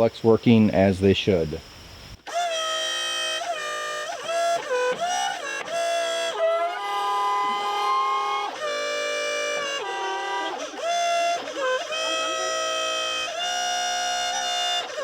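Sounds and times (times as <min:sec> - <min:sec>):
melody of sliding held notes: 0:02.3 - 0:15.0.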